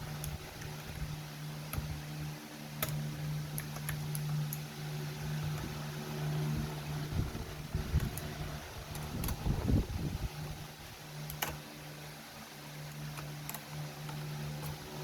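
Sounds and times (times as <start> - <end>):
steady low hum: 0.0 - 15.0
sharp plastic clicks: 8.9 - 9.7, 11.2 - 11.6.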